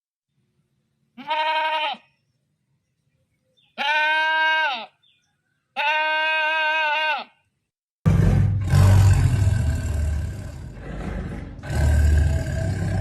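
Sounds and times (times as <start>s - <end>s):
farm animal bleating: 1.2s - 2.2s, 3.7s - 5.2s, 5.8s - 7.4s.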